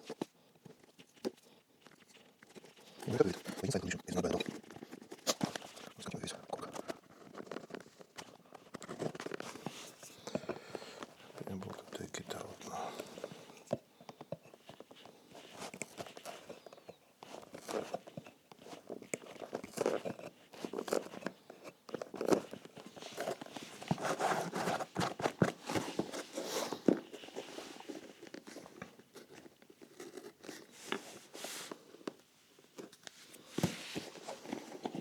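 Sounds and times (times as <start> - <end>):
cork filler crunching and scraping: 2.8 - 27.4.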